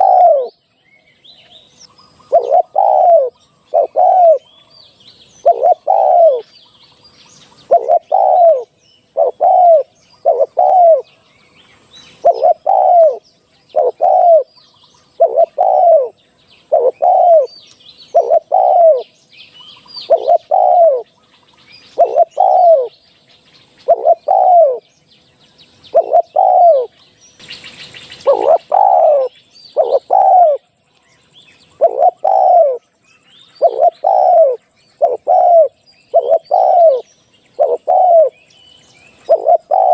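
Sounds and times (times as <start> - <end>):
dove cooing: 0.0 - 0.6, 2.2 - 4.5, 5.4 - 6.5, 7.6 - 11.1, 12.1 - 14.5, 15.1 - 19.1, 20.0 - 21.1, 21.9 - 23.0, 23.8 - 24.8, 25.9 - 26.9, 28.1 - 30.6, 31.7 - 32.8, 33.6 - 38.4, 39.1 - 39.9.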